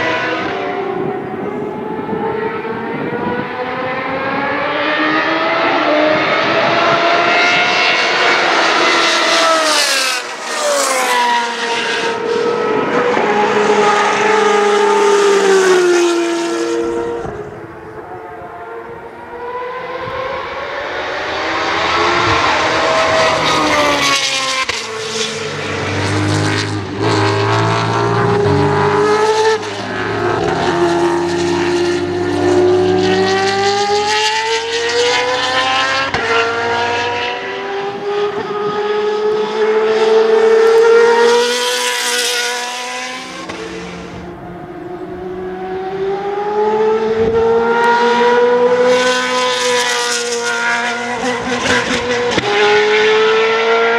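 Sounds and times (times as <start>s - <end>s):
racing car engine revving: 0.0s - 53.9s.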